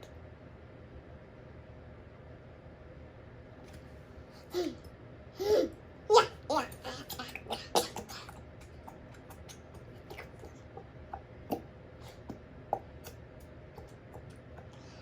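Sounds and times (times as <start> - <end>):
faint clicks and taps: 8.2 - 14.8.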